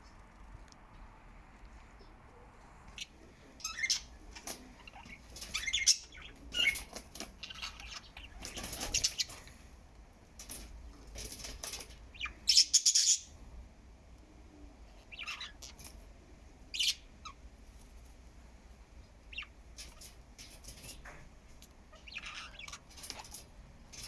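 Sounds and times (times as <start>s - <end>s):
budgies chirping and warbling: 2.9s - 9.6s, 11.4s - 13.3s, 15.0s - 15.9s, 16.7s - 17.4s, 19.3s - 21.0s, 21.9s - 24.0s.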